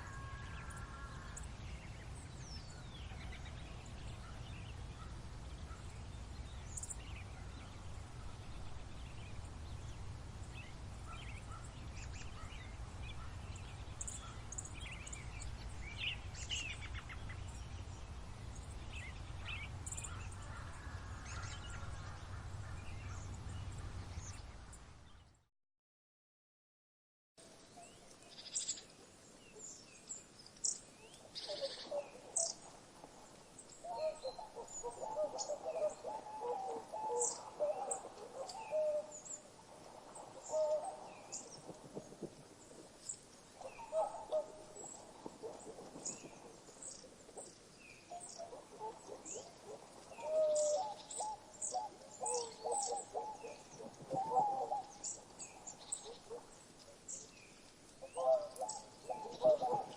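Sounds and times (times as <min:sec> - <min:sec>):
lower-pitched bird calling: 0:31.4 - 0:32.6, 0:33.9 - 0:39.4, 0:48.1 - 0:56.5, 0:58.0 - 0:59.9.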